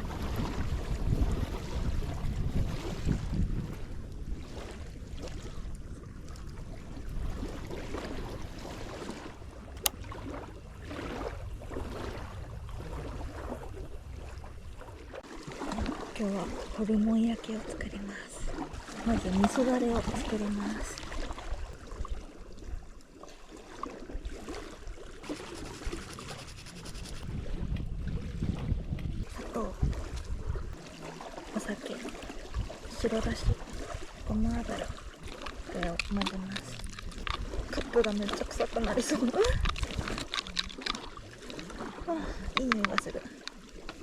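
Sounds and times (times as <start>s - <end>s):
wind rumbling on microphone: 0.0s - 44.0s
sharp click: 9.8s - 10.0s
spoon scraping in a cup: 25.2s - 27.3s, 35.7s - 41.2s.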